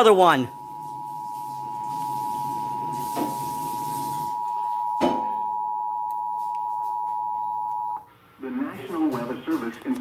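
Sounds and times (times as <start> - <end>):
two-tone alert signal: 0.5 - 8.0.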